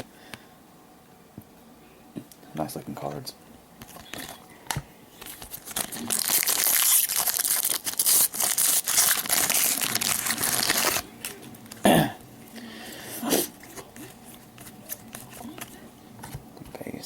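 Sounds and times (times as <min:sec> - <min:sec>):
wrapper crinkling and tearing: 0:05.2 - 0:11.9.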